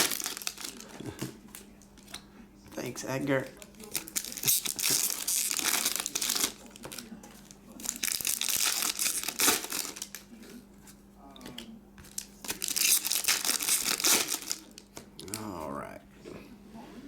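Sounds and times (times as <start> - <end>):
wrappers torn and crinkled: 0.0 - 1.3, 3.6 - 10.3, 12.0 - 15.4.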